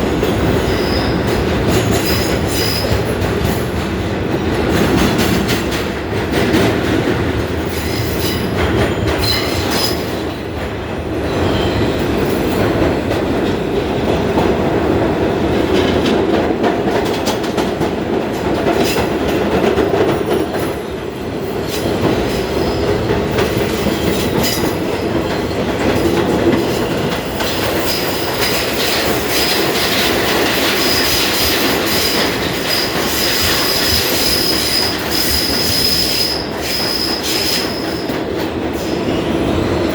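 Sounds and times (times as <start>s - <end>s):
subway train rumble: 0.0s - 39.9s
wheels clicking over rail joints: 15.5s - 38.9s
high wheel squeal: 32.6s - 38.1s.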